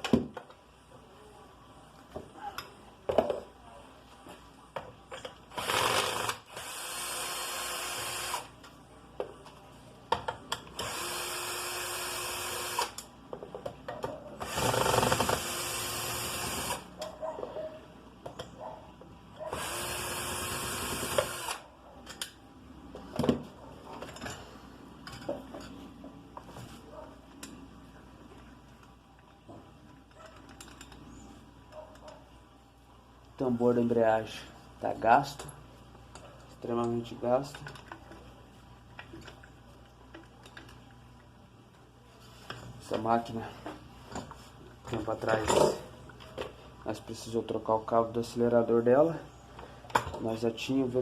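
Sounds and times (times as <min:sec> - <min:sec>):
handheld power tool running: 0:05.6 - 0:08.5, 0:10.8 - 0:13.0, 0:14.4 - 0:16.9, 0:19.5 - 0:21.6
clicks and knocks of tools: 0:22.0 - 0:22.4, 0:30.0 - 0:31.1, 0:36.1 - 0:38.2, 0:38.9 - 0:41.0.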